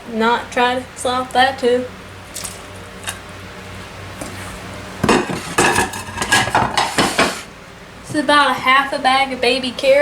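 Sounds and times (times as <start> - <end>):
dish and utensil clinking: 5.0 - 7.4.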